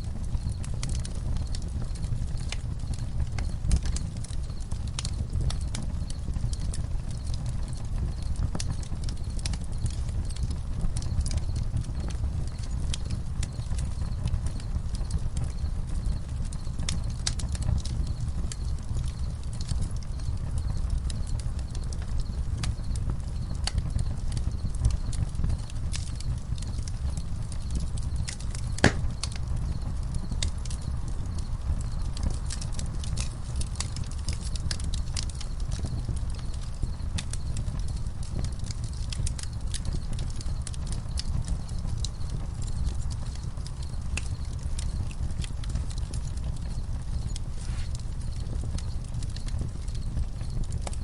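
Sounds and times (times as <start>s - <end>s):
campfire crackling: 0.0s - 51.0s
crickets chirping: 18.1s - 50.8s.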